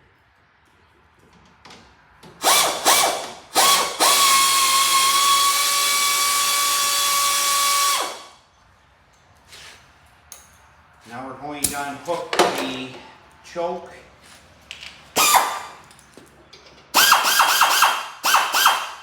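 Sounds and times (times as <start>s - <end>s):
power drill whirring: 2.4s - 8.3s, 15.2s - 15.7s, 17.0s - 19.0s.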